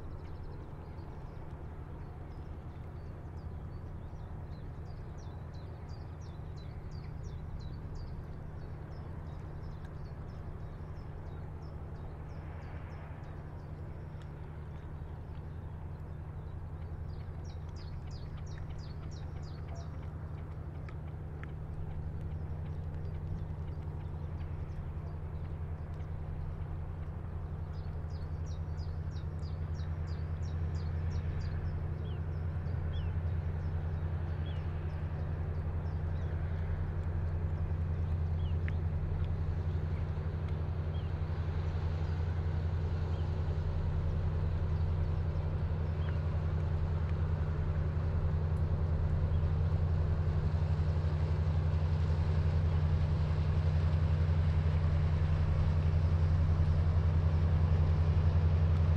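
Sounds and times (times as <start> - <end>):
ship engine drone: 0.0 - 58.9
bird chirping: 16.4 - 20.1.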